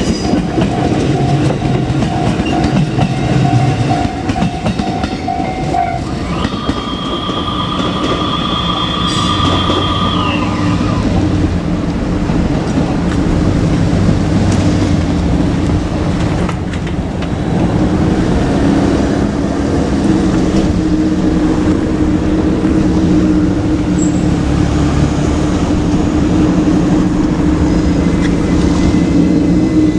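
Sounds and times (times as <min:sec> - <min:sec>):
vehicle noise low hum and rush: 0:10.5 - 0:29.9.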